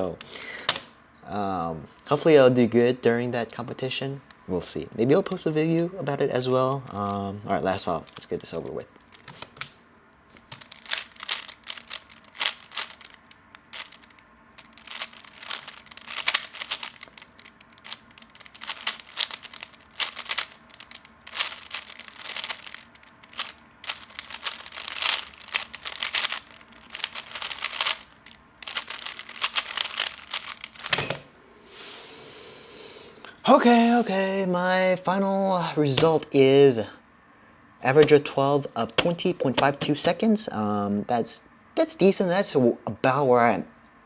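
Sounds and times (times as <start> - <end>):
plastic cube layers clicking: 10.4 - 31.0.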